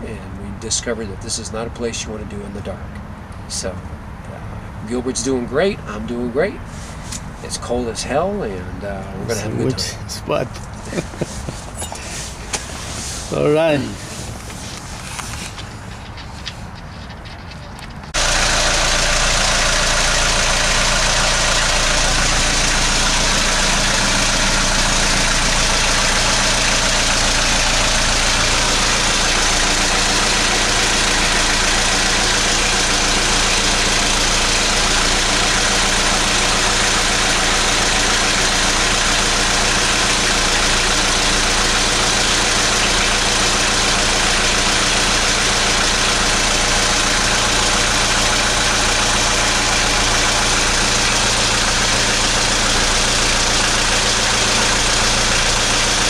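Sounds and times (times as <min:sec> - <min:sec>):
boat diesel engine running: 0:17.8 - 0:56.0.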